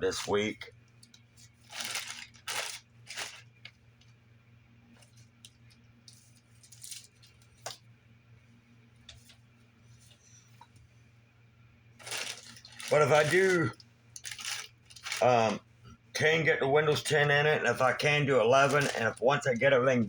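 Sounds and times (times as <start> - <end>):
faint electrical hum: 0.0 - 20.0.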